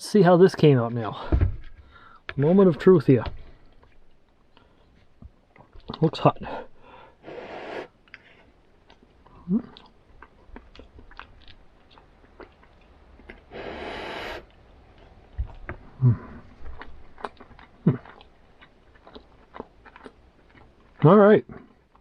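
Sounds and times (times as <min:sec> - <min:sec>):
person chewing food: 0:03.4 - 0:07.2, 0:07.9 - 0:13.5, 0:14.4 - 0:22.0.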